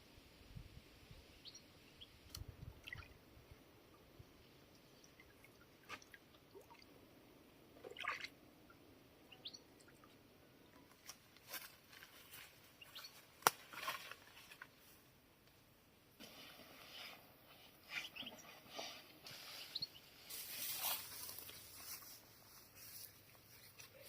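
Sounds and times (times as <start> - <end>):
bird chirp: 1.3 - 2.4, 9.2 - 10.2, 12.8 - 13.3, 17.8 - 18.8, 19.4 - 20.2
faint rustles and clicks: 10.8 - 24.0.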